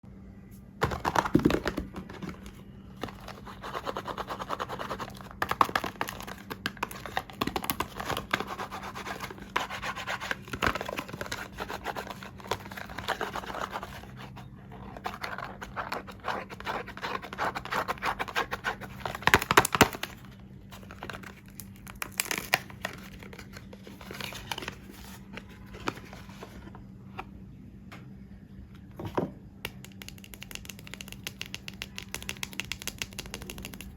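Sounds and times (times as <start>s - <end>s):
faint steady hum: 0.0s - 33.9s
packaging crinkling and tearing: 20.8s - 24.9s.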